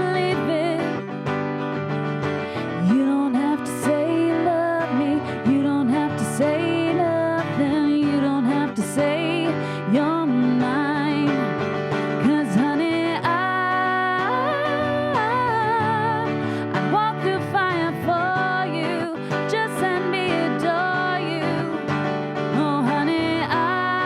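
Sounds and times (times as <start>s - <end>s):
female duo singing: 0.0s - 1.0s, 2.8s - 11.6s, 12.2s - 21.9s, 22.5s - 24.0s
acoustic guitar: 0.0s - 24.0s.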